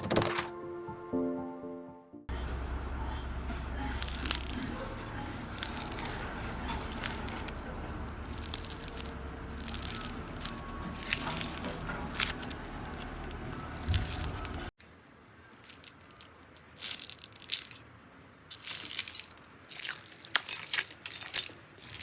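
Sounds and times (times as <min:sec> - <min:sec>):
slime crackling and popping: 0:03.9 - 0:04.8, 0:05.5 - 0:14.7, 0:15.6 - 0:17.8, 0:18.5 - 0:22.0.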